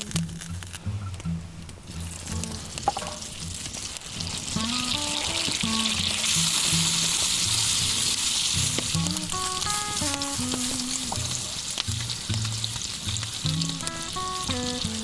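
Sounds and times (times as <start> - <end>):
food sizzling in a hot pan: 1.9 - 15.0.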